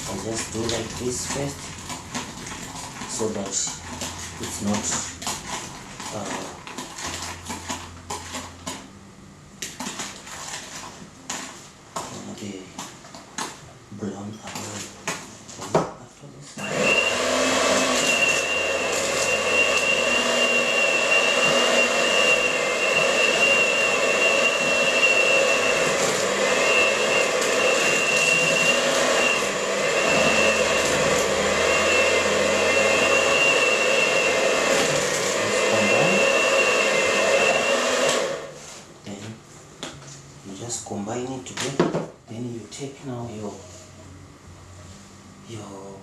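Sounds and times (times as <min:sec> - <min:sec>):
electric mixer whine: 0:16.6 - 0:38.6.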